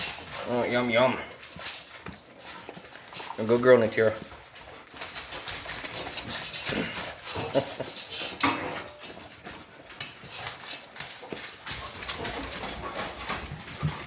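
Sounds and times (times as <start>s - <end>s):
dog chewing and crunching: 0.0s - 14.0s.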